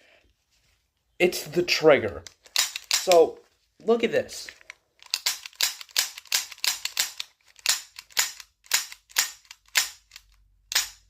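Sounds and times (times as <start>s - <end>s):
airsoft pistol shots: 10.7s - 11.0s.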